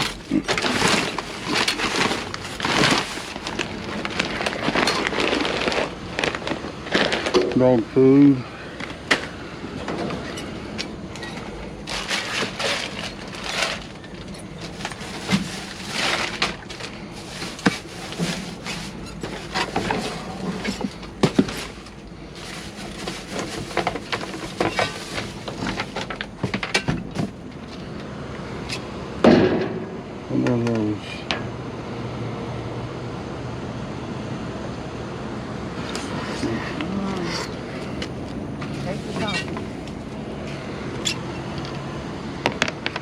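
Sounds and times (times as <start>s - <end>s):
items knocking and clattering: 0.0s - 7.6s, 8.8s - 30.0s, 37.8s - 43.0s
packaging rustling: 0.0s - 7.7s, 10.1s - 29.2s.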